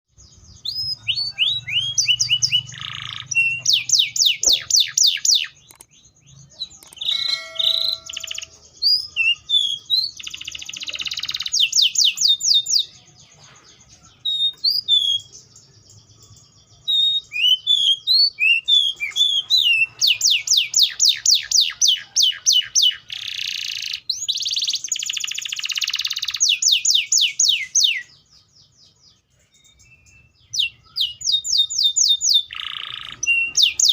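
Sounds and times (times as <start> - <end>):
canary singing trills: 0.1 - 33.9.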